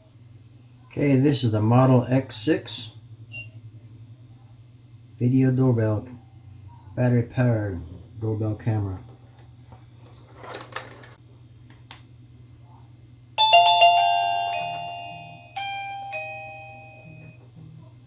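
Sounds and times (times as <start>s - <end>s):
steady low hum: 0.0s - 10.3s
doorbell ding-dong chime: 13.4s - 17.4s.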